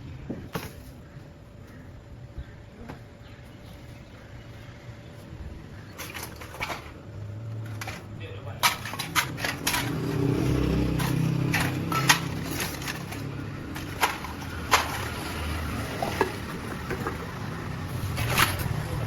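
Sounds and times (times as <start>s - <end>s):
road traffic rumble: 0.0s - 19.0s
sharp clinks and knocks: 7.7s - 15.3s.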